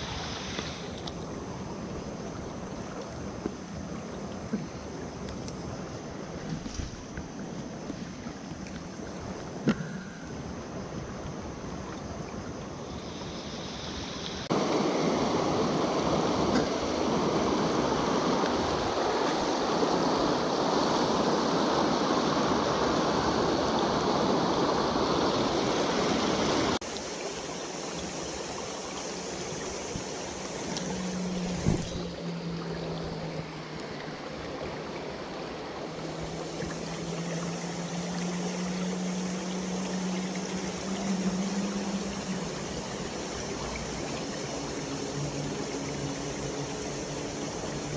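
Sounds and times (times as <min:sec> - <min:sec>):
stream water rushing: 0:00.0 - 0:47.9
low steady hum: 0:27.0 - 0:47.9.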